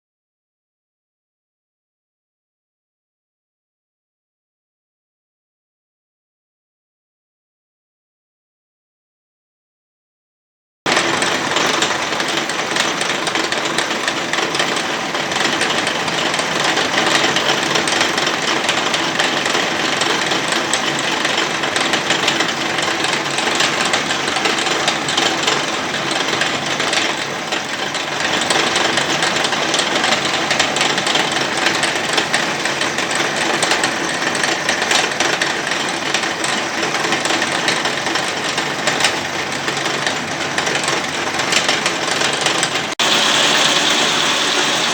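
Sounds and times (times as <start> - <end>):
machine tool rattling: 10.9 - 44.9.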